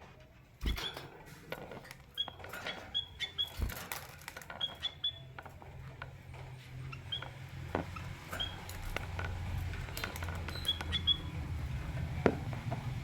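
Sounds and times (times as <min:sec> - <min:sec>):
birds chirping: 0:00.6 - 0:13.0.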